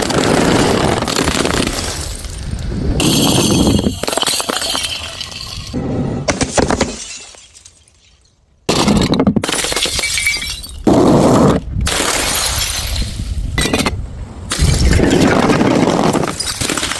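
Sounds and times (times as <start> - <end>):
glass bottles smashing: 3.0 - 10.9, 11.9 - 13.8, 16.3 - 16.9.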